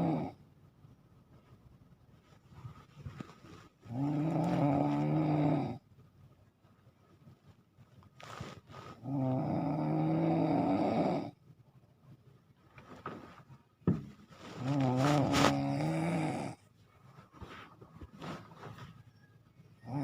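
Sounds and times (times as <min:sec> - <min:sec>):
person snoring loudly: 0:00.0 - 0:00.4, 0:03.9 - 0:05.8, 0:09.0 - 0:11.4, 0:14.6 - 0:16.6
breathy sounds: 0:14.4 - 0:16.7.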